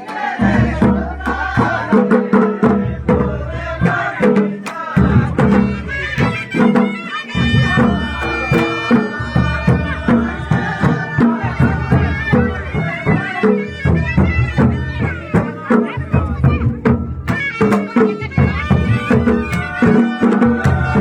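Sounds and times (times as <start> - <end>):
driving drum beat: 0.0 - 21.0
reedy wind instrument: 5.3 - 21.0.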